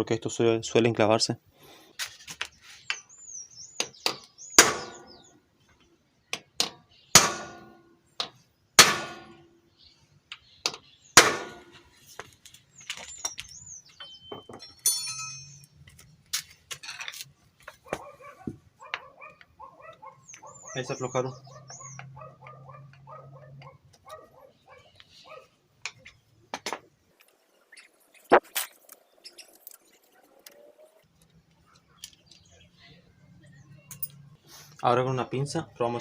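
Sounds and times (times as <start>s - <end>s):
birds chirping faintly: 0.0s - 36.0s
sharp metallic blows: 4.6s - 5.2s, 7.1s - 7.8s, 8.8s - 9.5s, 11.2s - 11.8s.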